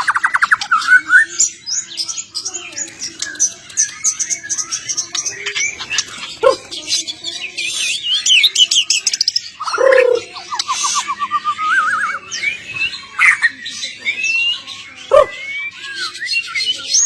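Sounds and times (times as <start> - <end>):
songbirds chirping and twittering: 0.0 - 17.0.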